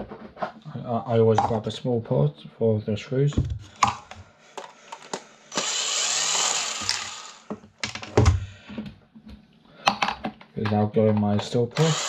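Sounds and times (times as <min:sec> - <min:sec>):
screws and parts clicking: 0:03.8 - 0:08.1, 0:11.4 - 0:12.0
power screwdriver running: 0:05.5 - 0:07.5, 0:11.7 - 0:12.0.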